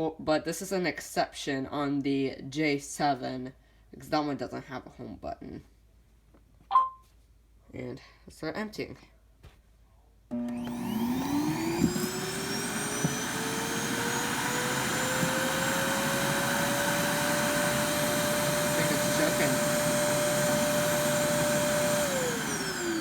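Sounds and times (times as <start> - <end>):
suction motor whirring: 10.3 - 23.0.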